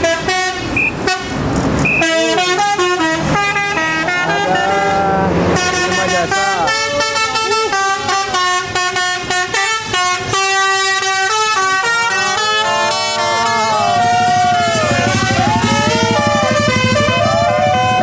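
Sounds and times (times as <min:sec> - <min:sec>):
diesel bus engine: 0:00.0 - 0:18.0.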